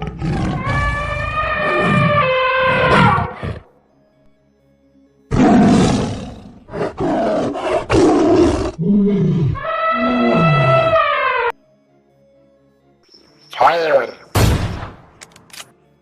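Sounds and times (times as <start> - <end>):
animal-like roars and growls: 0.0 - 3.6, 5.3 - 11.5.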